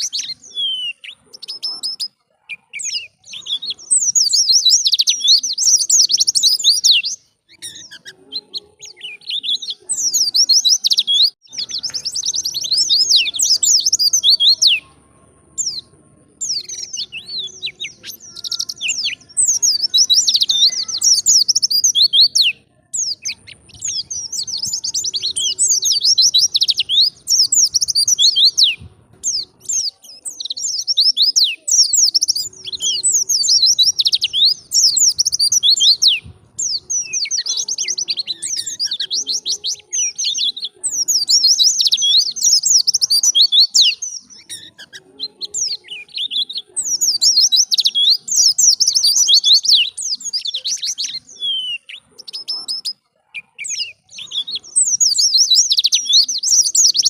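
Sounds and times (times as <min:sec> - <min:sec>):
bird twittering song: 0:00.0 - 0:57.0.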